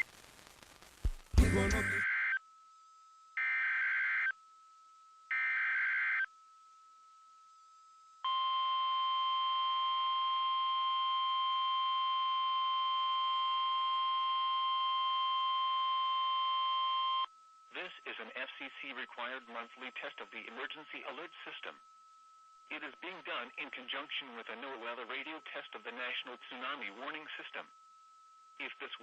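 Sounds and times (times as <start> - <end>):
buzzy digital data bursts: 0.0 - 2.1
electronic alarm tone: 1.4 - 2.4.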